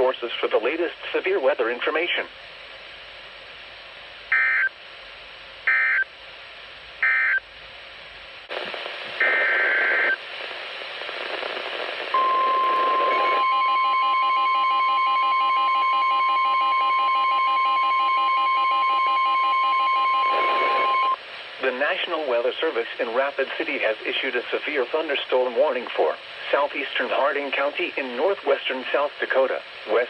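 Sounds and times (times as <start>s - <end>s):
rapid pulsing beep: 12.2s - 21.2s
steady warning alarm tone: 12.2s - 21.2s.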